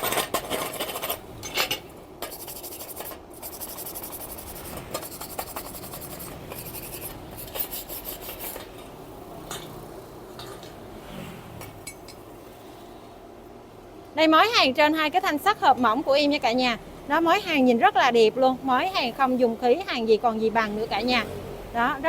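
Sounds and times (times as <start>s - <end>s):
scratchy rubbing on metal: 0.0s - 1.2s, 2.2s - 8.7s.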